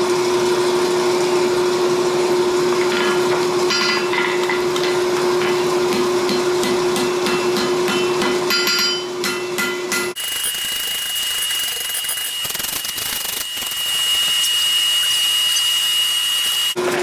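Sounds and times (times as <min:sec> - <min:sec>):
forge blower hum: 0:00.0 - 0:17.0
hammer striking steel on anvil: 0:03.7 - 0:10.2.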